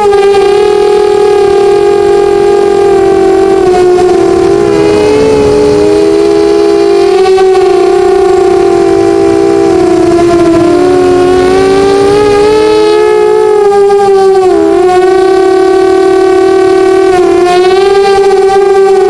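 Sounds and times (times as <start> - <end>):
drone motors and propellers whining: 0.0 - 19.0.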